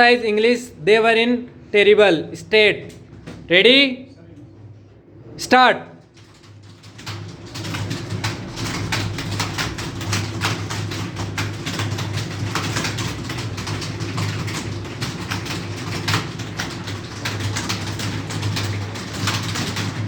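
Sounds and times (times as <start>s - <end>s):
fast keyboard typing: 6.0s - 20.0s.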